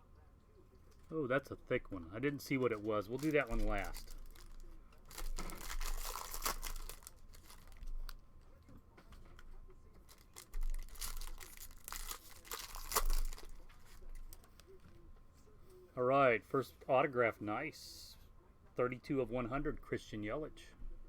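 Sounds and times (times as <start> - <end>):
packaging crinkling: 2.5 - 8.2, 10.0 - 14.8
wrapper tearing: 2.7 - 8.2, 10.1 - 14.6.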